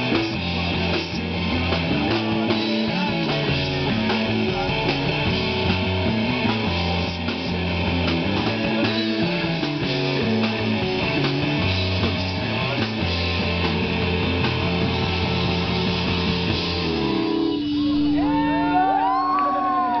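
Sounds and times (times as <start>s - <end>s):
rock band playing: 0.0s - 20.0s
wavering sliding high tones: 17.3s - 19.8s.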